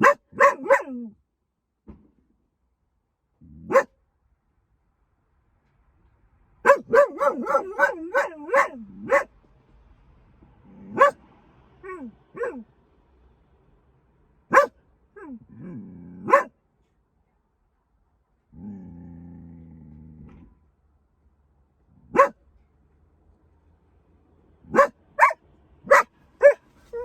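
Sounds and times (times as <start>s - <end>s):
dog barking: 0.0s - 1.1s, 3.6s - 3.9s, 6.6s - 9.3s, 10.7s - 11.2s, 11.8s - 12.6s, 14.5s - 16.5s, 22.1s - 22.4s, 24.6s - 27.0s
dog yelping: 0.0s - 1.1s, 3.6s - 3.9s, 6.7s - 9.3s, 10.7s - 11.2s, 11.8s - 12.6s, 14.5s - 16.5s, 22.1s - 22.4s, 24.7s - 27.0s.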